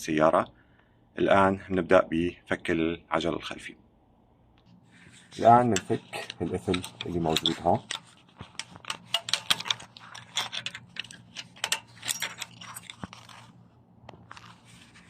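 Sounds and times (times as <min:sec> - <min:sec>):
metal clip clicking and rattling: 0:05.8 - 0:13.5.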